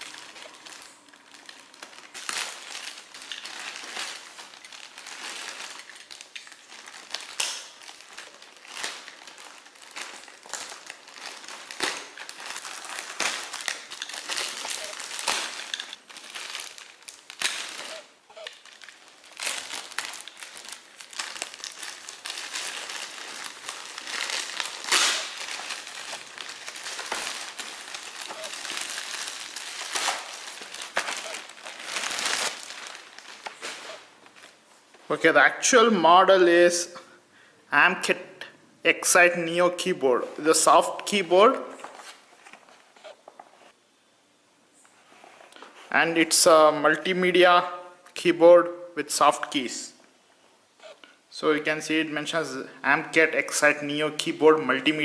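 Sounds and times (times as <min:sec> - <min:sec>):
packaging crinkling and rustling: 0:00.0 - 0:35.0, 0:40.6 - 0:43.8.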